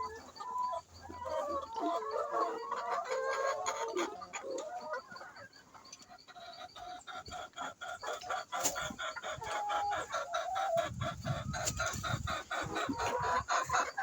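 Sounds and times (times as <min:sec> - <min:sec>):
hens clucking: 0:00.0 - 0:14.0.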